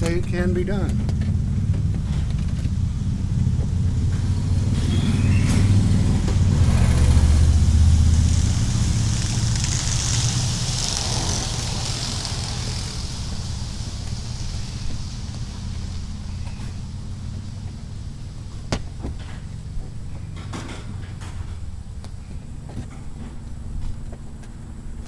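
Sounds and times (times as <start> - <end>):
low rumble: 0.0 - 24.0
hiss: 4.7 - 18.6.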